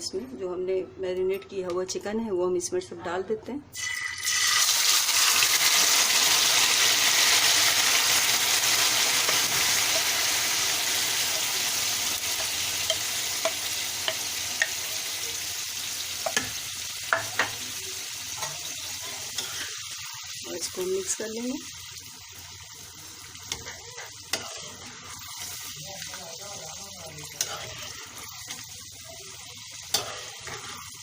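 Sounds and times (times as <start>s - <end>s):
chicken sizzling in hot oil: 3.8s - 31.0s
spoon clicking against pan: 12.4s - 14.8s.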